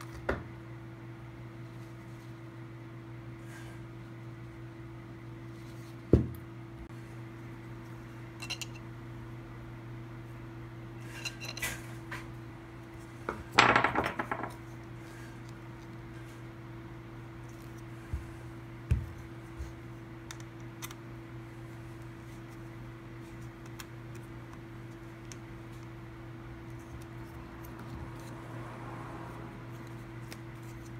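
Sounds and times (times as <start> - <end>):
steady hum: 0.0 - 30.9
hard objects knocking: 13.3 - 14.6.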